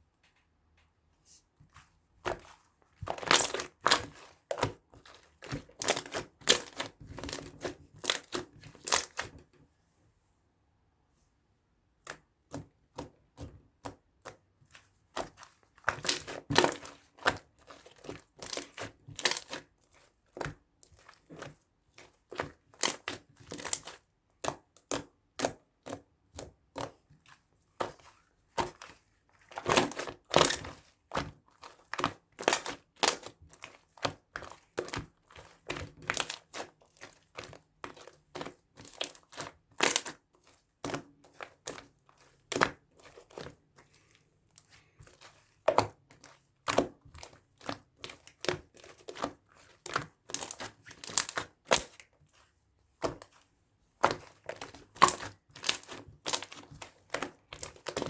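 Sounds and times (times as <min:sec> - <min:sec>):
crinkling and crunching: 0:02.3 - 0:09.3, 0:27.8 - 0:58.0.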